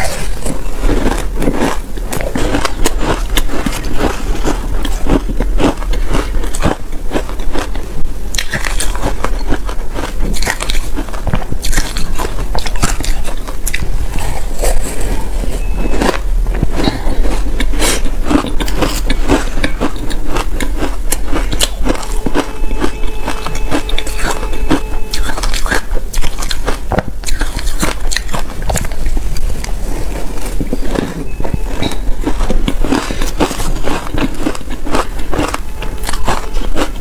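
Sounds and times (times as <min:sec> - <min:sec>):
crunching shaved ice: 0:00.0 - 0:37.0
faint steady tone: 0:20.9 - 0:26.0.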